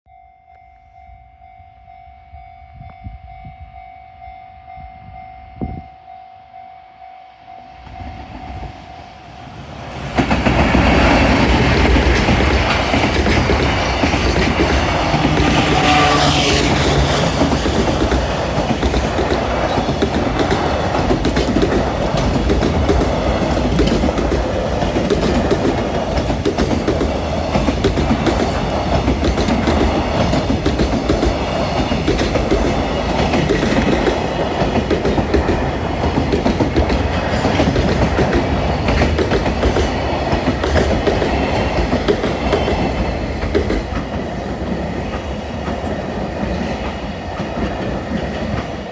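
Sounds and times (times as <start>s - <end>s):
train wheels clattering over rail joints: 10.0s - 48.9s.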